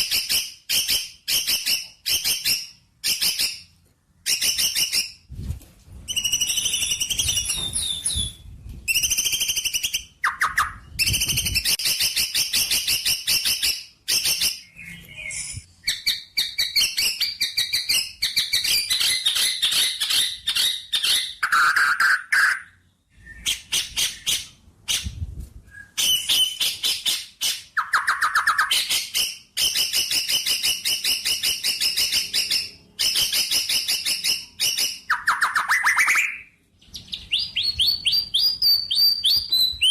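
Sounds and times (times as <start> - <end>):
low bird chirps: 6.1 - 29.0.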